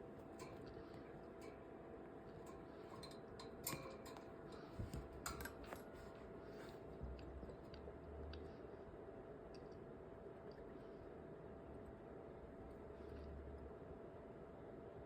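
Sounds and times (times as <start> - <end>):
small clicks and scratchy rustles: 0.0 - 8.7.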